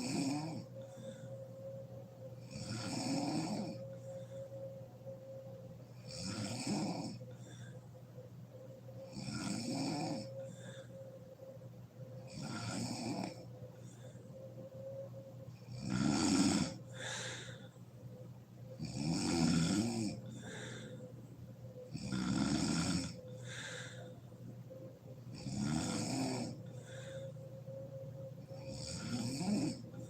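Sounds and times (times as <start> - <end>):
woman snoring: 0.0 - 7.8, 8.6 - 11.6, 12.2 - 17.7, 18.7 - 30.0
soft breath: 0.6 - 2.4, 3.7 - 6.0, 7.2 - 9.1, 10.3 - 12.3, 13.4 - 15.6, 16.7 - 18.8, 20.1 - 21.9, 23.2 - 25.3, 26.5 - 29.0.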